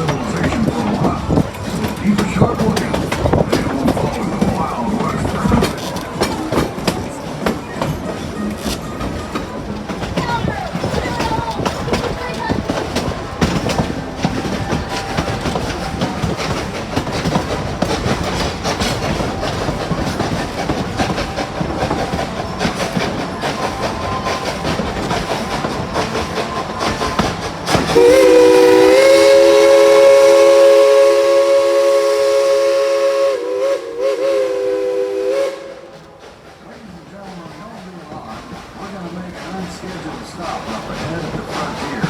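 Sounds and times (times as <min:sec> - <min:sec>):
train rumbling and clattering on rails: 0:00.0 - 0:42.0
steam whistle chord: 0:27.9 - 0:35.9.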